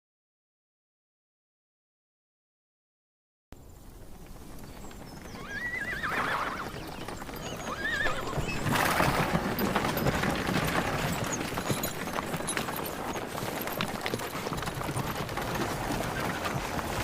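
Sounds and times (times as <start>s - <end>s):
hooves clopping: 3.6s - 17.0s
horse whinnying: 5.4s - 9.6s, 15.6s - 16.8s.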